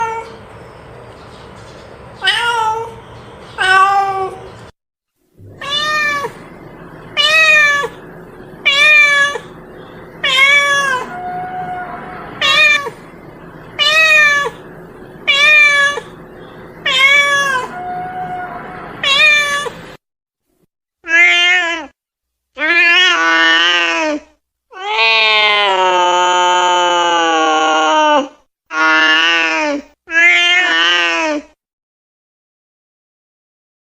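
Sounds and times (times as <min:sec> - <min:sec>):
cat meowing: 0:02.2 - 0:03.0, 0:03.6 - 0:04.5, 0:05.4 - 0:09.6, 0:10.2 - 0:13.1, 0:13.8 - 0:16.2, 0:16.8 - 0:19.9, 0:21.1 - 0:21.9, 0:22.6 - 0:28.2, 0:30.1 - 0:31.4.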